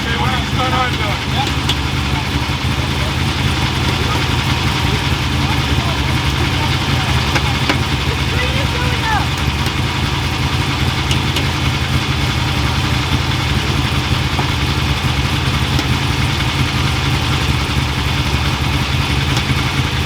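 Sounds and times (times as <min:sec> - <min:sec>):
engine idling loudly: 0:00.0 - 0:20.0.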